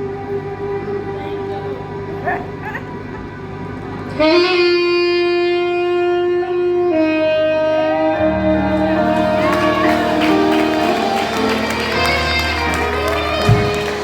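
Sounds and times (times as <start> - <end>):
wind instrument holding notes: 4.1 - 14.0.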